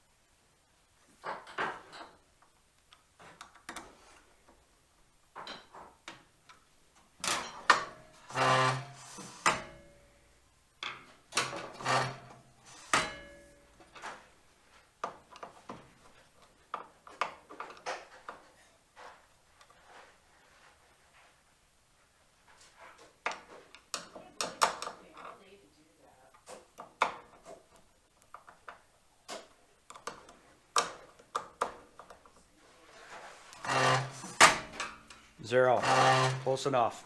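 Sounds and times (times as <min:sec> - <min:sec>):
metal parts clicking and scraping: 0:33.5 - 0:36.6.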